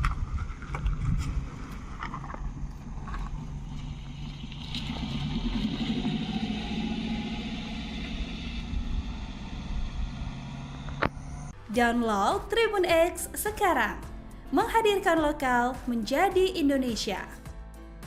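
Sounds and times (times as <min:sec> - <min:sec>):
motor engine running: 0:01.0 - 0:11.6.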